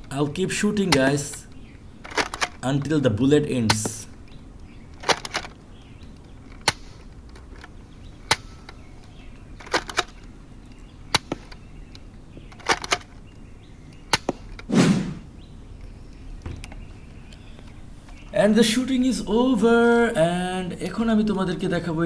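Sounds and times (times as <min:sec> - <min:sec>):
loud thump: 0:14.7 - 0:15.4.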